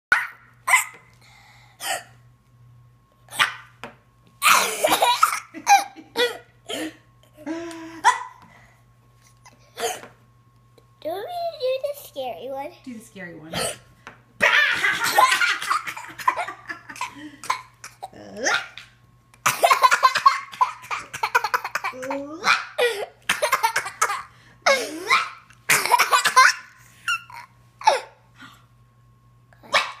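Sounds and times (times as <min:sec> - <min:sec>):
child laughing: 0:04.4 - 0:06.5, 0:14.4 - 0:17.7.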